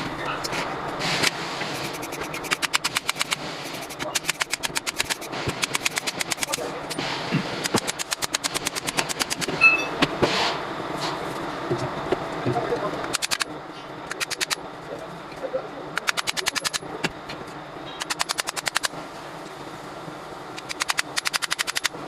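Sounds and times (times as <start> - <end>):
ratchet wrench clicking: 1.9 - 6.6, 13.1 - 13.4, 16.0 - 16.8, 18.0 - 18.9, 20.6 - 21.9.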